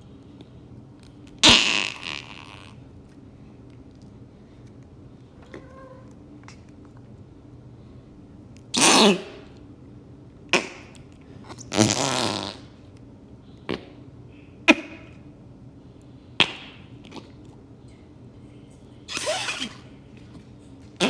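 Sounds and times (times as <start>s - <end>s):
putty wet fart noises: 1.4s - 2.8s, 8.7s - 9.5s, 10.5s - 12.8s, 13.7s - 14.0s, 16.4s - 17.5s, 19.1s - 21.0s.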